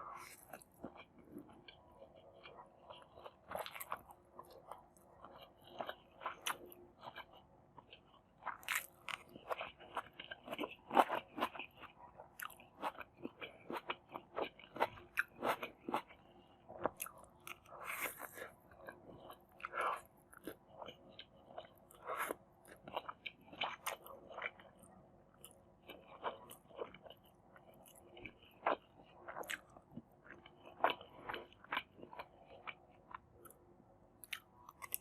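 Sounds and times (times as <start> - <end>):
person chewing and crunching: 0.0 - 35.0.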